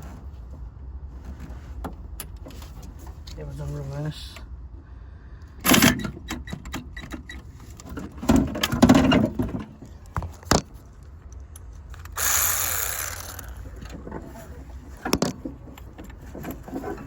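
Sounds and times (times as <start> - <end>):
cordless power tool bursts: 12.1 - 13.8.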